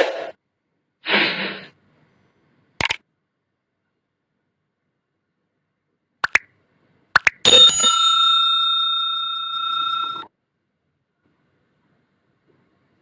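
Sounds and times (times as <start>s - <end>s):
quick double clicks: 2.8s - 3.0s, 6.2s - 6.5s, 7.2s - 7.4s
bright bell ding: 7.5s - 10.3s.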